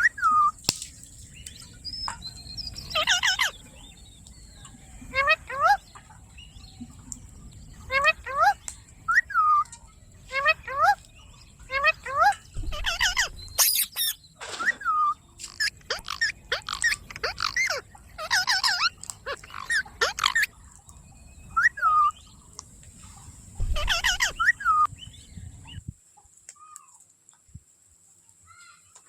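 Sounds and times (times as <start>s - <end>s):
parrot calling: 2.8s - 3.6s, 5.1s - 5.8s, 7.9s - 9.6s, 11.7s - 20.6s, 23.7s - 24.9s.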